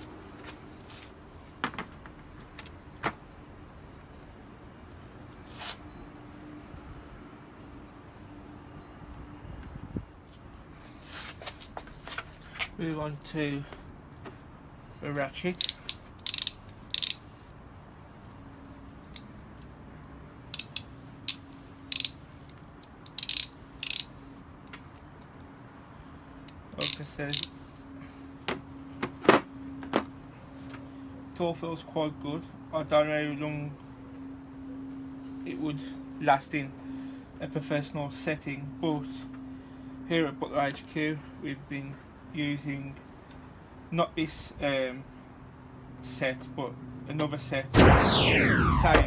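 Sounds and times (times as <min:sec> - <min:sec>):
soft scrape: 0:10.8 - 0:12.3
ratchet wrench clicking: 0:15.5 - 0:17.2, 0:20.5 - 0:22.2, 0:23.0 - 0:24.1.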